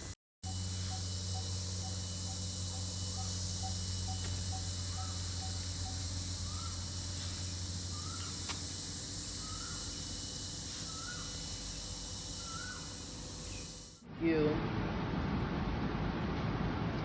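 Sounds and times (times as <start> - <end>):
steady low hum: 0.0 - 17.0
bird chirping: 0.5 - 7.0, 7.9 - 8.5, 9.4 - 10.0.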